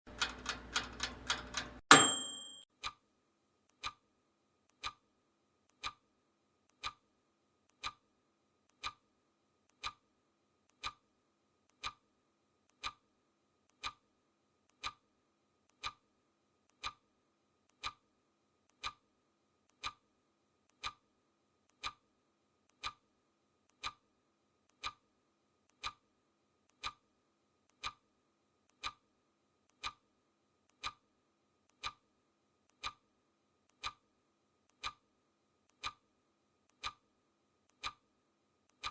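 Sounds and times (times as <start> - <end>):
clock ticking: 0.1 - 3.0, 37.7 - 38.0.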